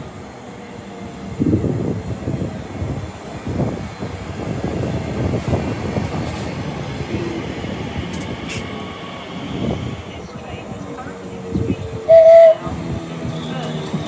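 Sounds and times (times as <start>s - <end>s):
train wheels rumbling on rails: 0.0s - 14.0s
train wheels knocking: 12.2s - 14.0s.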